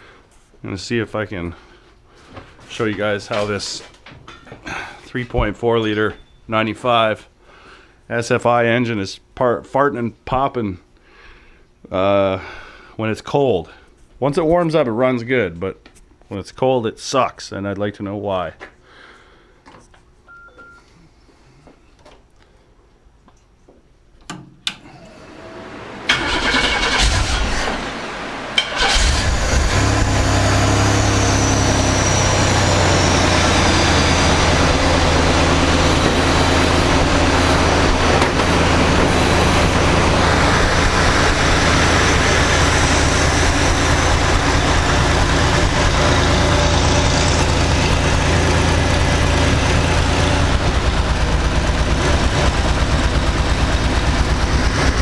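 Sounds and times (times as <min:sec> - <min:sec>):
car engine cranking and idling: 0:25.6 - 0:55.0.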